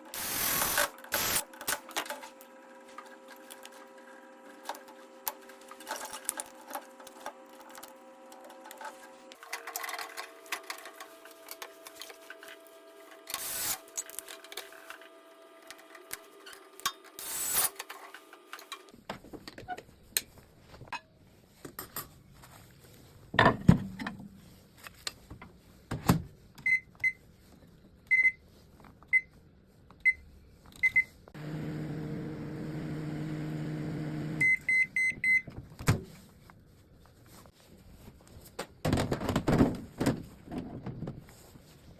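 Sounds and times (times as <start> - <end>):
microwave humming: 31.4 - 34.7
multi-tone hum: 31.4 - 35.2.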